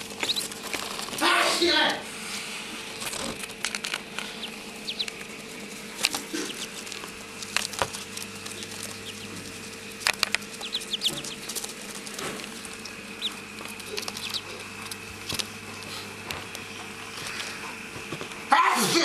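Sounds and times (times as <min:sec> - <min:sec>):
high duckling peeps: 0:00.0 - 0:01.6, 0:04.0 - 0:15.4
ducklings scuffling and pattering: 0:00.0 - 0:18.4.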